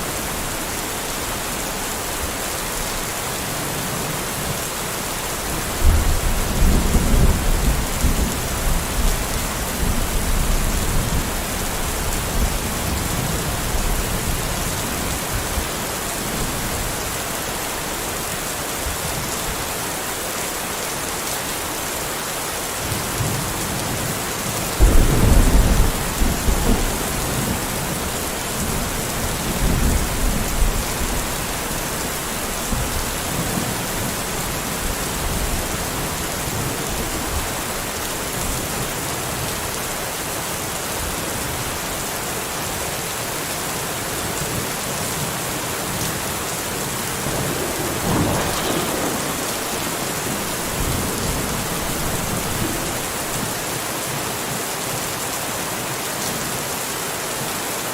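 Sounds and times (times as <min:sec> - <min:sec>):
heavy rain hissing: 0:00.0 - 0:56.2
thunder rumbling: 0:24.7 - 0:38.8, 0:46.0 - 0:53.8.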